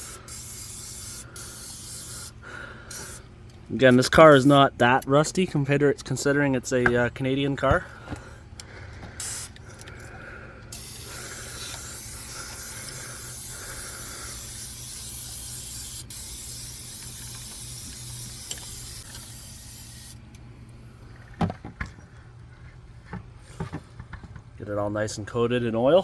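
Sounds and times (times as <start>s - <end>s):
spray can hissing: 0.0s - 3.2s, 9.2s - 9.6s, 10.7s - 20.2s.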